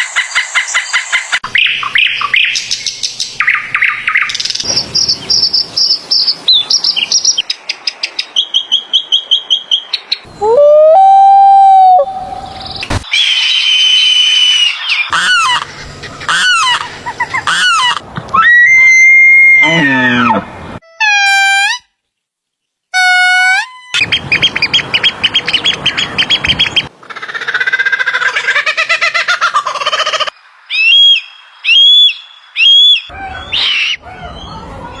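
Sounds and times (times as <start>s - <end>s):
shrill animal calls: 13.1s - 21.9s, 27.0s - 35.0s
rapid trilling animal call: 15.1s - 18.0s
loud whistled animal calls: 30.7s - 34.7s.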